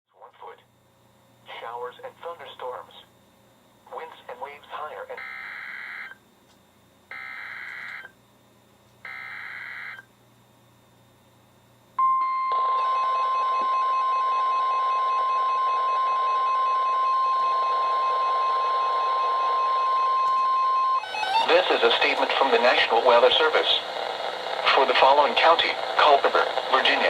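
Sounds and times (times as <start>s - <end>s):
radio hiss: 1.4s - 3.2s, 3.8s - 5.3s, 21.4s - 27.0s
steady alarm tone: 5.2s - 6.2s, 7.1s - 8.2s, 9.0s - 10.1s, 12.0s - 27.0s.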